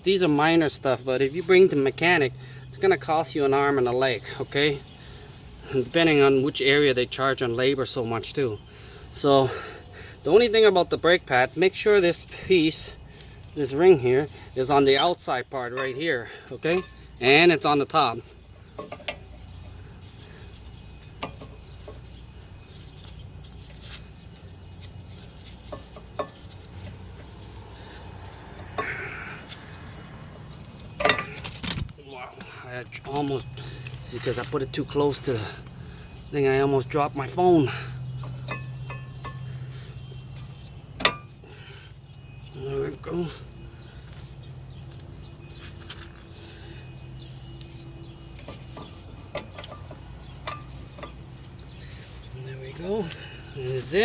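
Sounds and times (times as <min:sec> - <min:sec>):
steady low hum: 0:10.9 - 0:54.0.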